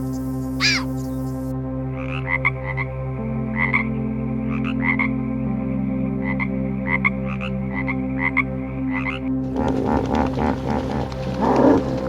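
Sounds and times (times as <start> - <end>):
frog croaking: 6.2 - 12.0
low background drone: 9.4 - 12.0.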